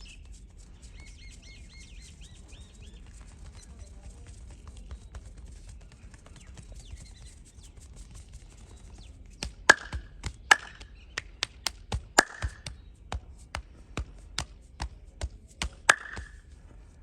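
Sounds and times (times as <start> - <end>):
hands slapping on body: 8.9 - 16.6.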